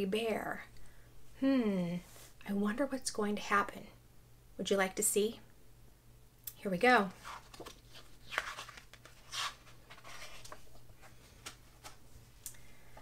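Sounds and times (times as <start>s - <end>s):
paper rustling: 7.2s - 12.0s
book pages turning: 7.2s - 12.1s.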